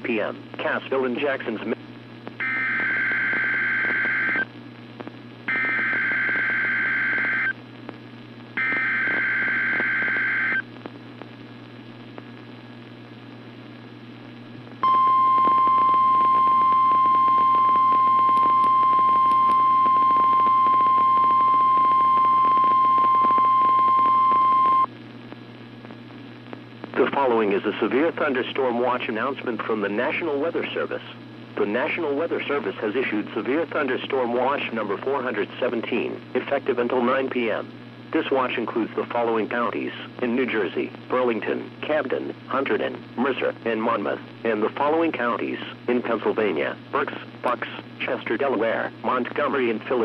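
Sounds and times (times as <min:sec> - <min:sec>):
radio hum and hiss: 0:00.0 - 0:50.0
steady warning alarm tone: 0:02.4 - 0:04.4, 0:05.5 - 0:07.5, 0:08.6 - 0:10.6.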